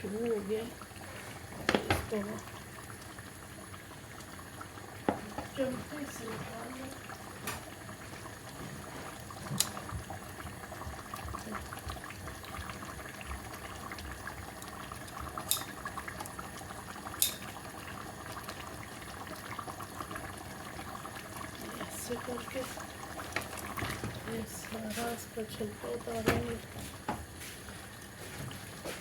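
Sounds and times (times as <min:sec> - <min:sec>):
water boiling in a pot: 0:00.0 - 0:29.0
metal ladle clicking against pot: 0:17.2 - 0:17.4.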